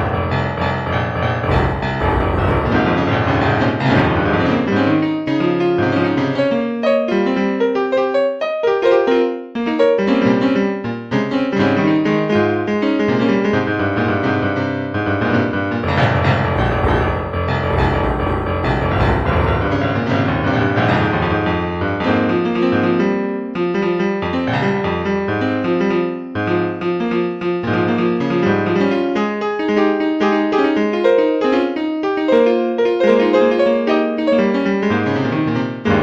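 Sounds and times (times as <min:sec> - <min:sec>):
solo piano playing: 0:00.0 - 0:36.0.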